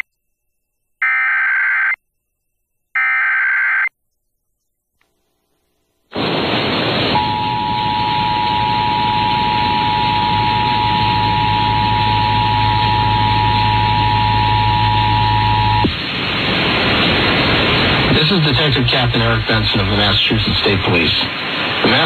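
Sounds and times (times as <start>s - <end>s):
low hum: 5.0s - 19.9s
radio hiss: 6.1s - 22.0s.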